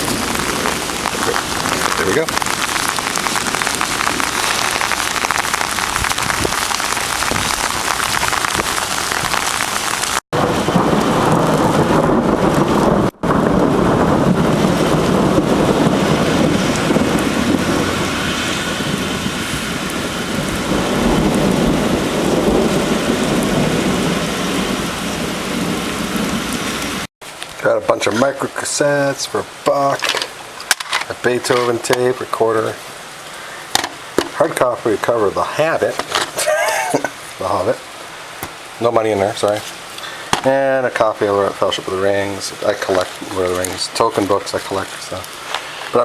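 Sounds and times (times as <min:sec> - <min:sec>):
thunder rumbling: 0:00.0 - 0:27.1
heavy rain pouring: 0:00.0 - 0:46.0.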